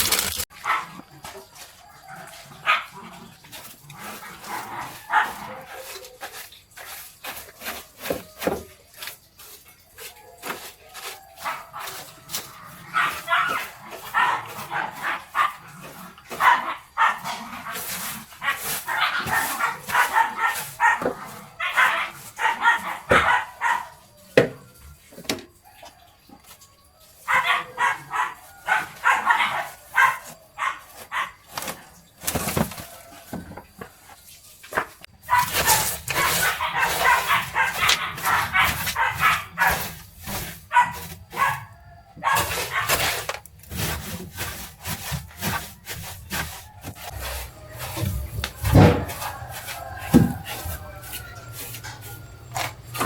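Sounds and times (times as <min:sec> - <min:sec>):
dog barking and yipping: 0:00.0 - 0:06.4, 0:10.0 - 0:24.4, 0:27.0 - 0:31.8, 0:35.2 - 0:43.3, 0:46.3 - 0:53.0.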